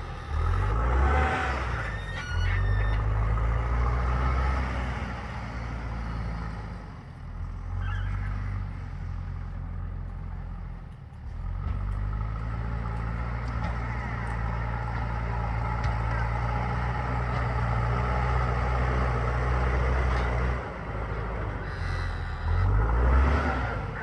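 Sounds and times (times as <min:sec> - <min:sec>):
diesel engine running: 0:00.0 - 0:24.0.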